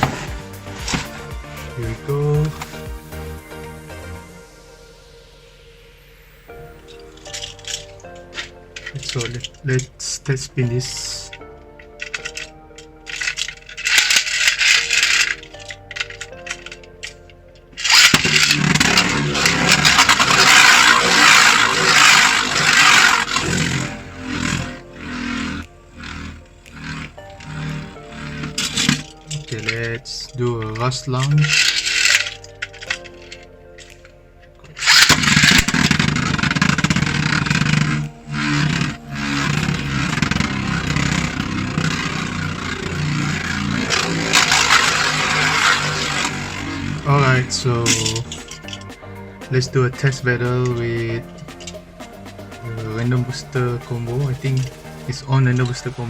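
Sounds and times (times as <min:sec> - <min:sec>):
spinning top rattling whirr: 0:00.0 - 0:04.1, 0:06.5 - 0:34.1, 0:34.7 - 0:56.0
spinning top launched: 0:17.8 - 0:34.0, 0:34.8 - 0:56.0.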